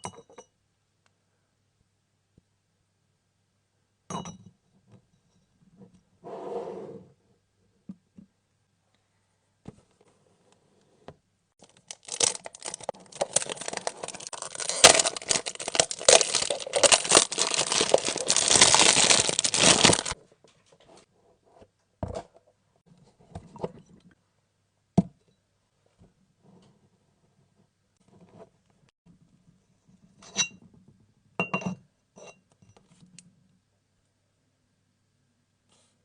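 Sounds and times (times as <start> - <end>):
packaging tearing and crinkling: 11.6 - 20.2.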